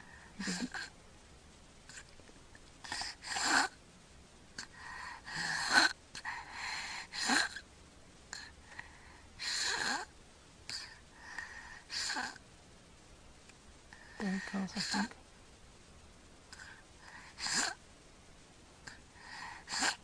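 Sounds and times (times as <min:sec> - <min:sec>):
child snoring: 0:00.4 - 0:00.9, 0:02.8 - 0:03.8, 0:04.6 - 0:06.0, 0:07.0 - 0:07.6, 0:09.4 - 0:10.1, 0:11.8 - 0:12.4, 0:16.6 - 0:17.8, 0:18.9 - 0:20.0.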